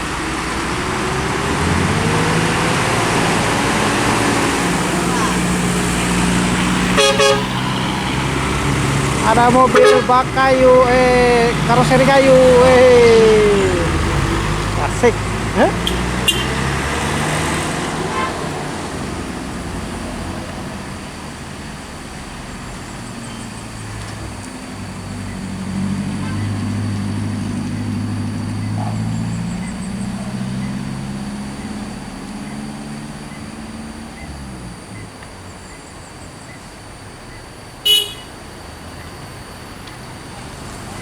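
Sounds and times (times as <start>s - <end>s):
heavy vehicle engine passing: 0.0s - 35.1s, 35.9s - 41.0s
short horn toot: 6.8s - 8.2s, 9.3s - 10.5s, 15.6s - 16.6s, 37.9s - 38.3s.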